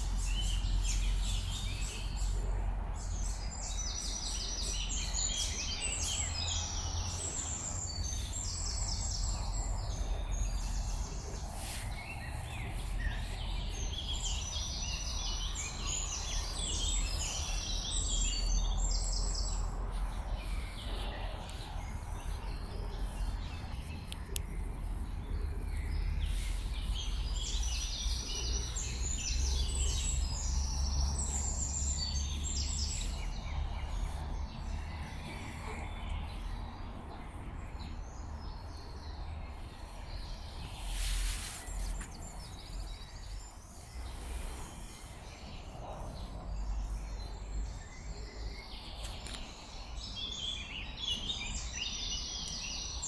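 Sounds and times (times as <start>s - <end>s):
songbirds trilling: 0.0s - 53.0s
steady low rumble: 6.2s - 41.0s.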